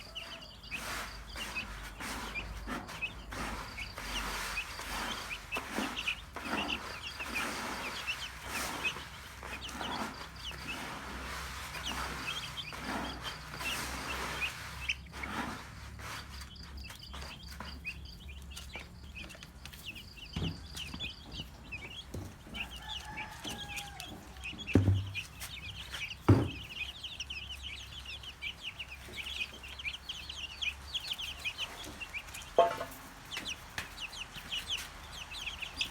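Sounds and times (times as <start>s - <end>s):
chicks peeping: 0.0s - 35.9s
hen clucking: 0.0s - 35.9s.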